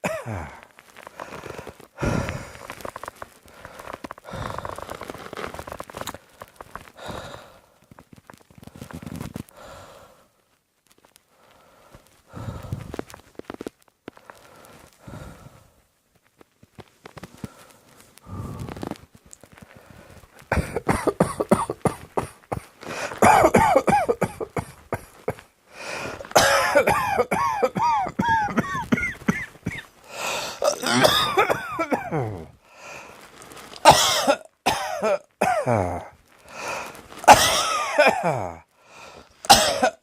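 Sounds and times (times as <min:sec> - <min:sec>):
person coughing: 0:00.0 - 0:00.6, 0:20.5 - 0:25.4, 0:26.1 - 0:32.5, 0:33.8 - 0:36.1, 0:37.3 - 0:38.6, 0:39.5 - 0:40.0.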